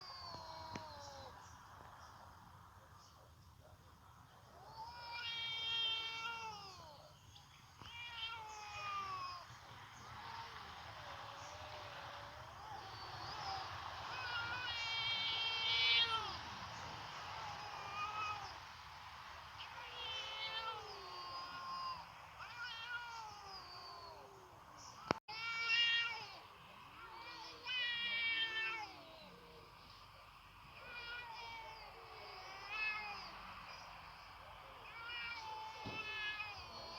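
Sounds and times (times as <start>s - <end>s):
cat meowing: 0.0s - 1.4s, 4.5s - 7.1s, 7.8s - 9.6s, 11.4s - 16.4s, 17.4s - 18.6s, 19.6s - 24.4s, 27.0s - 29.6s, 30.8s - 33.3s, 34.7s - 36.9s.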